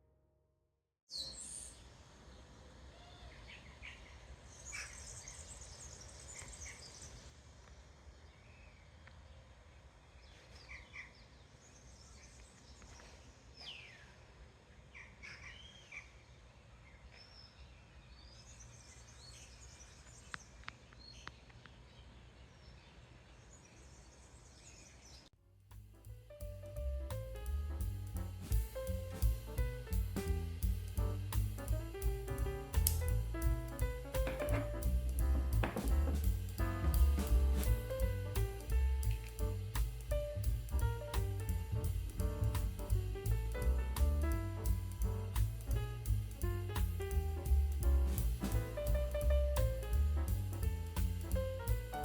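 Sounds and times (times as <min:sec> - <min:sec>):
small birds chirping: 0:01.1 - 0:25.3
low background rumble: 0:25.6 - 0:52.0.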